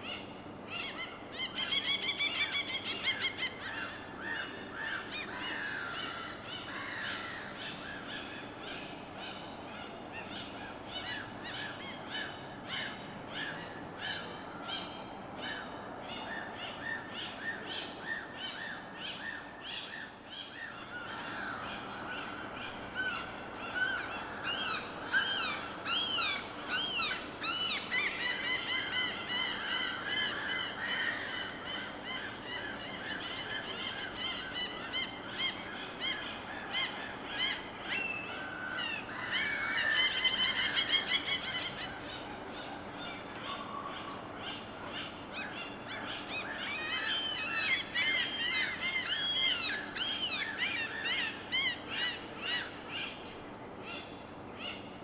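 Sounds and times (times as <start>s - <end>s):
birds calling: 16.4s - 55.0s.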